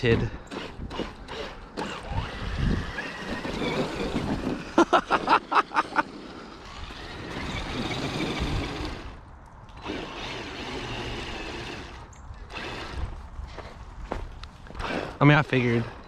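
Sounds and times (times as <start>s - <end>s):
electric motor whine: 0.0s - 4.9s, 5.8s - 13.2s
tyres churning snow: 0.0s - 15.9s.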